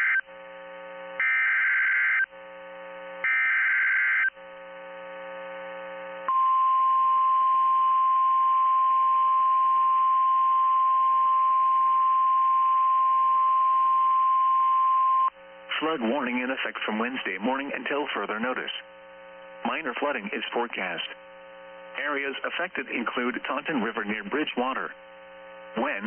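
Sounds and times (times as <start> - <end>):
steady warning alarm tone: 1.2 - 2.3, 3.2 - 4.3.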